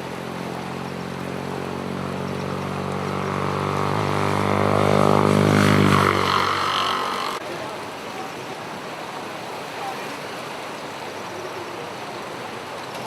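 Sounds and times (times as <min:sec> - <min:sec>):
vehicle engine passing: 0:00.0 - 0:07.4.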